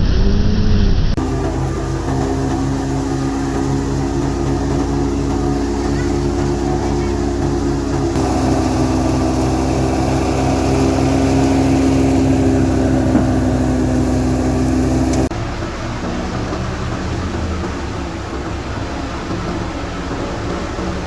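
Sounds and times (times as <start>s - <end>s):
thresher machine humming: 1.2s - 15.5s.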